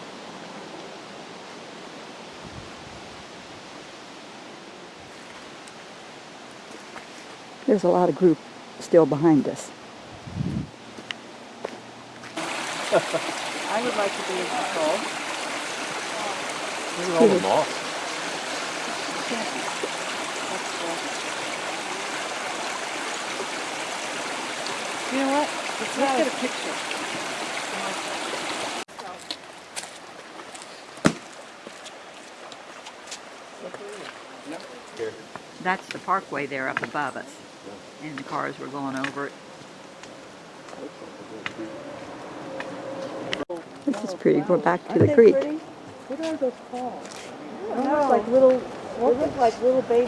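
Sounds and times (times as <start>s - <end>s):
creek rushing over rocks: 12.4s - 37.2s.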